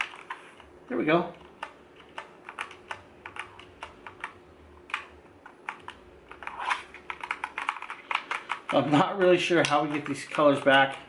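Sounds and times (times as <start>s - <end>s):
mechanical keyboard keys clicking: 1.6s - 8.8s.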